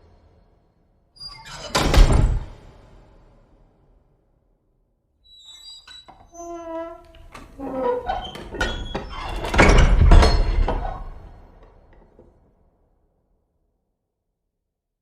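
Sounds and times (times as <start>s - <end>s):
high squeaks: 5.3s - 9.6s
creaking tone: 5.4s - 11.1s.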